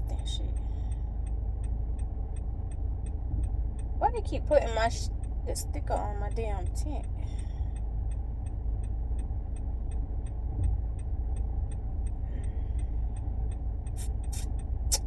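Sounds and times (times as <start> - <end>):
car cabin road and engine rumble: 0.0 - 15.0
turn signal ticking: 0.0 - 15.0.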